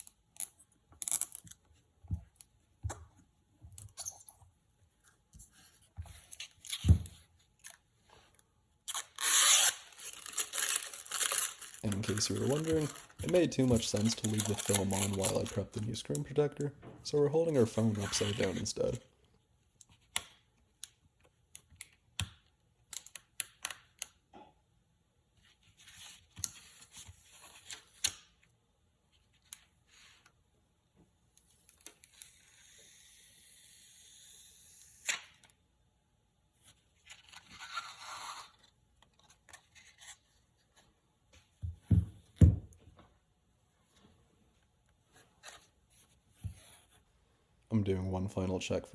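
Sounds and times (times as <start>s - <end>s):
plastic crinkling: 8.9s - 15.8s.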